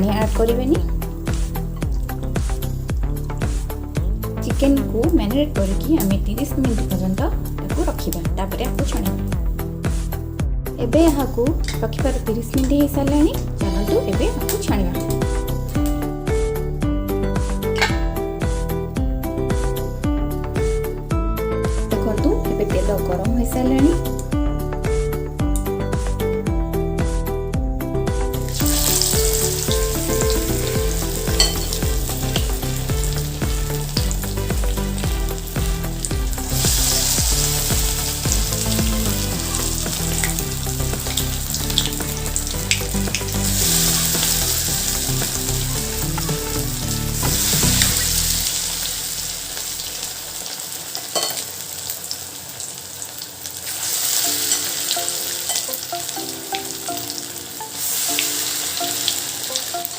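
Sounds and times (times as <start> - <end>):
food deep-frying in oil: 28.4 - 59.9.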